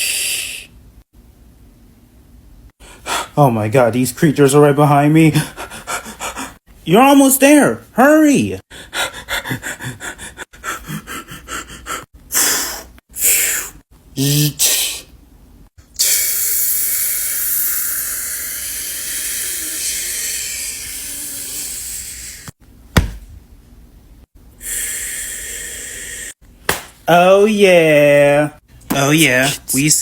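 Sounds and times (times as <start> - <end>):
heavy panting breaths: 2.8 - 3.4, 5.3 - 6.6, 8.7 - 13.8.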